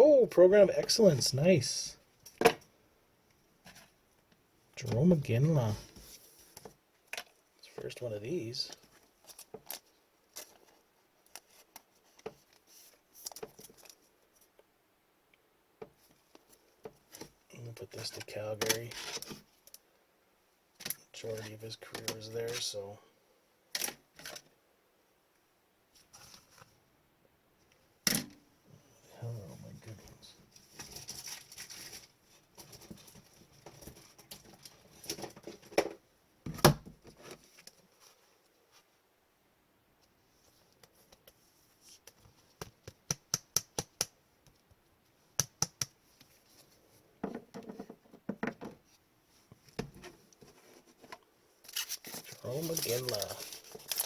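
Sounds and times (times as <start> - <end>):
trading cards clicking and rustling: 51.8 - 54.0.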